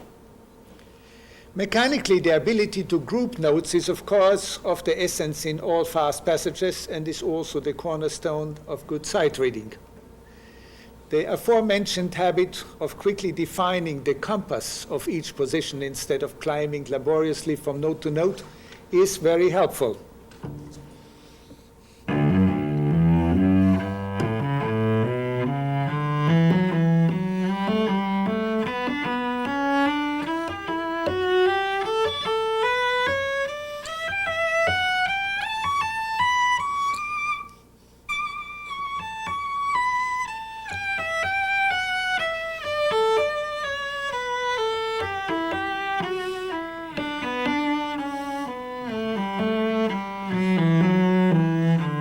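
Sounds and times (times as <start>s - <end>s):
solo cello playing a scale: 22.0s - 52.0s.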